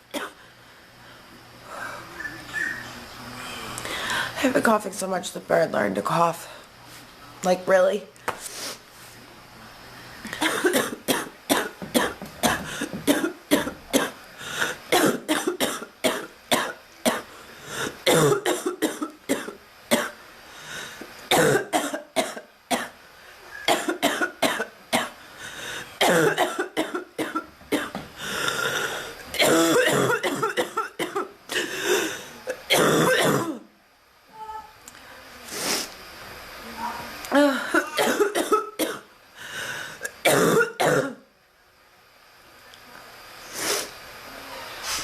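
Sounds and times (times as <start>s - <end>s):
woman coughing: 0.1s - 0.4s, 10.4s - 14.2s, 14.9s - 17.3s, 18.1s - 20.2s, 21.3s - 23.0s, 23.7s - 25.2s, 26.0s - 28.0s, 29.4s - 33.7s, 37.3s - 39.1s, 40.1s - 41.2s.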